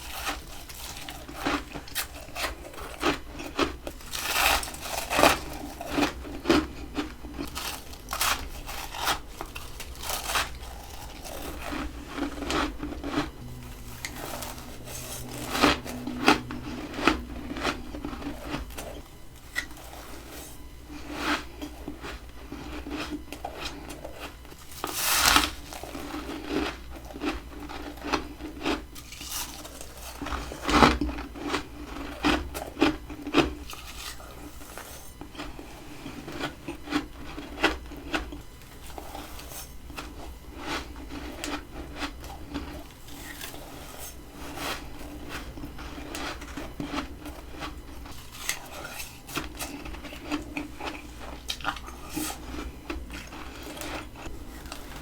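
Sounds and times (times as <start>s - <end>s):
biting and crunching frost: 0.0s - 38.4s, 39.0s - 55.0s.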